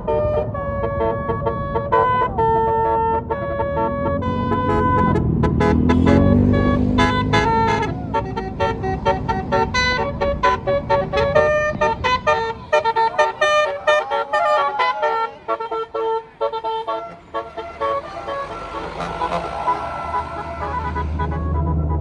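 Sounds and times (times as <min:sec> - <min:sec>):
bus engine running: 0:00.0 - 0:22.0
bus musical horn tooting: 0:00.0 - 0:22.0
hissing rush: 0:17.1 - 0:21.3.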